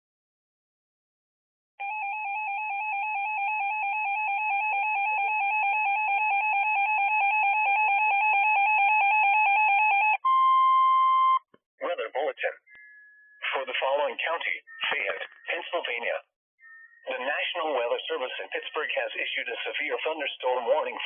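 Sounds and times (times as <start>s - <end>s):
emergency alert tone warbling: 1.8s - 11.5s, 12.7s - 17.9s
steady single beep tone: 10.2s - 11.5s.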